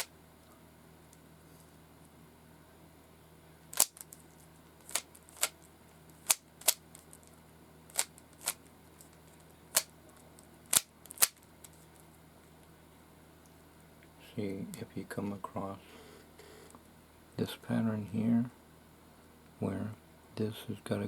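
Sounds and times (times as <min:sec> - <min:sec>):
plastic cube twisting clicks: 0:03.7 - 0:04.2, 0:04.8 - 0:05.6, 0:06.2 - 0:07.3, 0:07.9 - 0:08.6, 0:09.7 - 0:09.9, 0:10.7 - 0:11.8.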